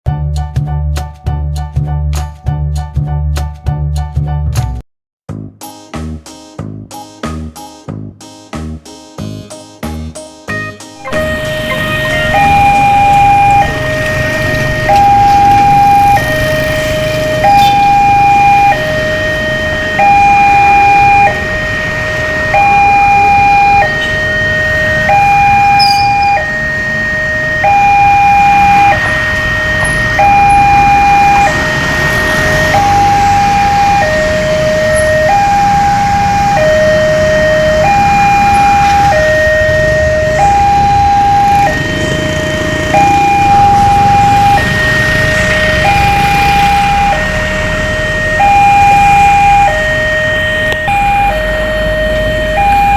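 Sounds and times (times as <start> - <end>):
two-tone hi-lo siren: 11.0 - 52.9.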